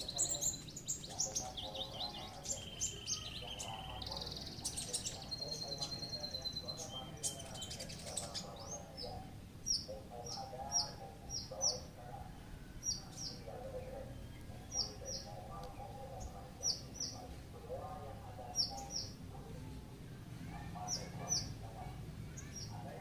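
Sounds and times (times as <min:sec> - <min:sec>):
bird warbling: 0:00.0 - 0:12.0
songbirds chipping: 0:00.0 - 0:23.0.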